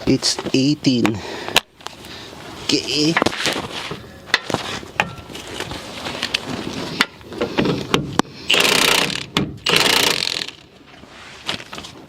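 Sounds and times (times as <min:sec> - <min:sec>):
ratchet wrench clicking: 0:08.5 - 0:10.6.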